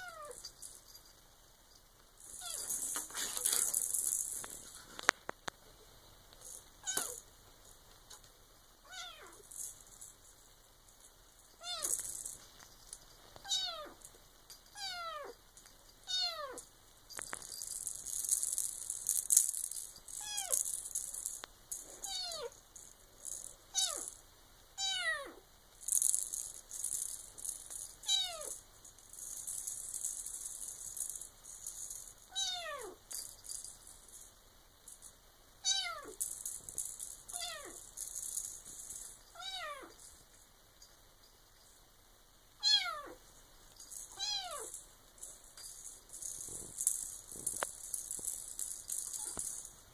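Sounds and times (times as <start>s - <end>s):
kitten meowing: 8.9s - 9.4s, 39.4s - 40.0s, 42.6s - 43.2s, 44.2s - 44.7s
high rattling noise: 17.1s - 24.2s, 36.1s - 41.8s, 43.6s - 49.9s.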